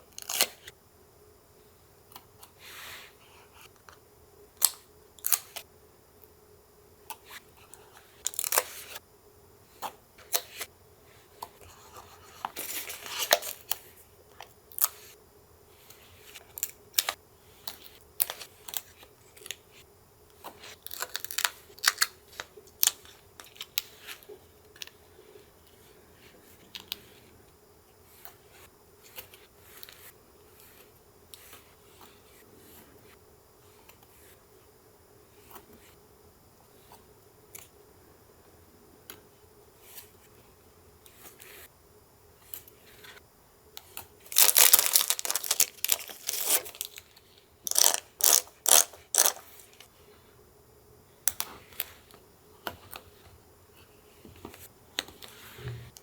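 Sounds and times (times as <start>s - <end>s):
paper tearing: 44.3s - 47.0s, 47.7s - 49.4s
paper being handled: 44.3s - 49.4s
scissors cutting paper: 44.4s - 47.0s, 47.7s - 49.5s.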